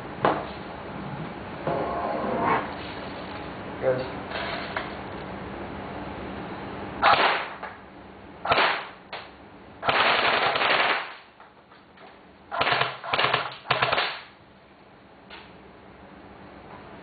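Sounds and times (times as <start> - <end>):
airsoft rifle firing in bursts: 7.0 - 7.5, 8.5 - 9.0, 9.8 - 11.3, 12.5 - 14.3.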